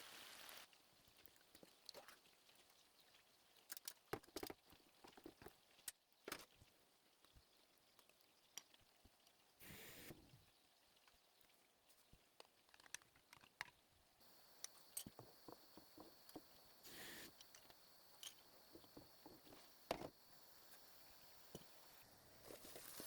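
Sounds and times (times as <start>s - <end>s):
short soft hiss: 9.6s - 10.2s, 16.8s - 23.0s.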